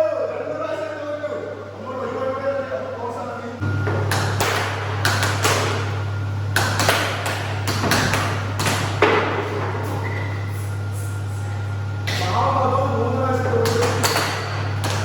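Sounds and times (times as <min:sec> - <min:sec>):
sharp knocks and clacks: 0:03.9 - 0:05.8, 0:06.6 - 0:09.4, 0:13.6 - 0:15.0.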